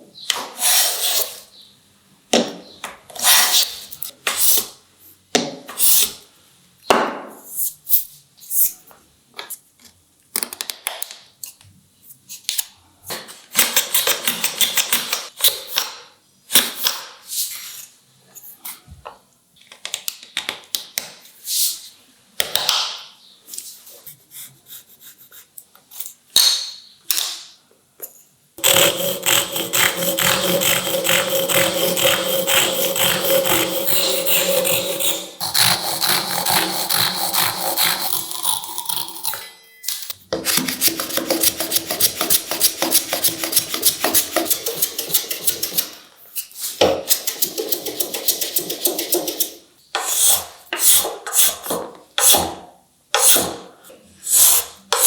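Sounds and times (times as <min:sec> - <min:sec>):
scraping strokes on wood: 0:28.6 - 0:39.5, 0:40.4 - 0:51.6.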